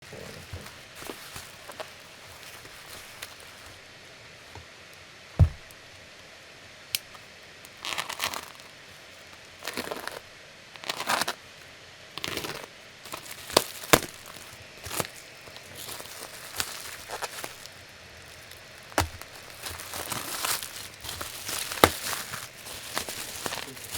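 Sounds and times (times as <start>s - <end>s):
packaging crinkling and tearing: 0.1s - 3.8s, 7.7s - 8.8s, 9.6s - 10.2s, 10.8s - 11.4s, 12.2s - 23.9s
thump: 5.4s - 5.6s.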